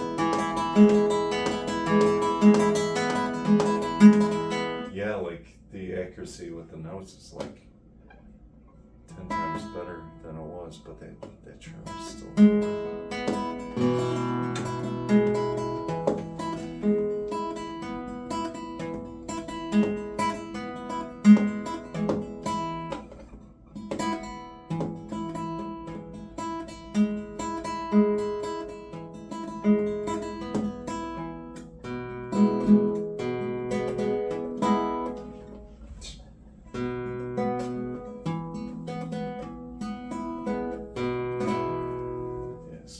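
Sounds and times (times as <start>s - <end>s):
guitar playing notes and chords: 0.0s - 4.9s, 9.0s - 10.2s, 11.0s - 42.9s.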